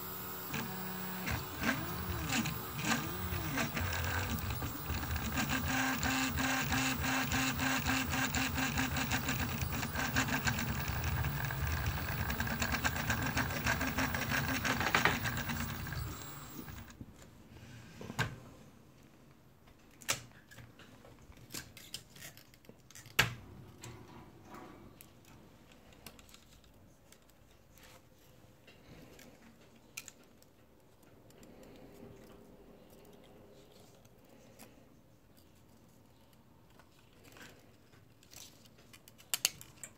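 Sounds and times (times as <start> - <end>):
stepper motors buzzing and whirring: 0.0 - 16.9
sharp clicks: 0.2 - 16.9.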